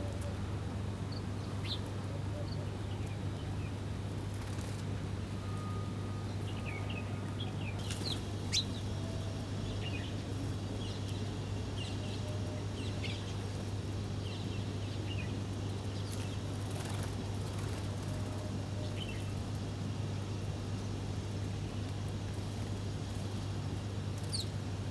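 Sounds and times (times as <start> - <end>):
small birds chirping: 7.8 - 8.9, 24.1 - 24.6.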